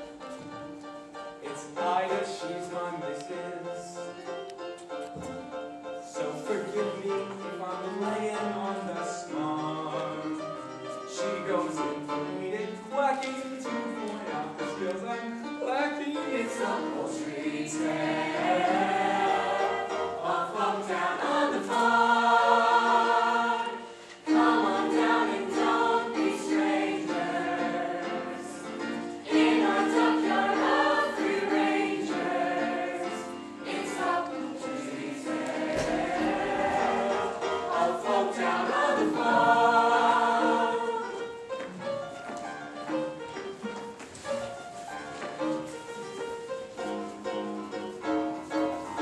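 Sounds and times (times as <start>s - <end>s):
choir singing in harmony: 0.0s - 12.9s, 15.9s - 41.9s.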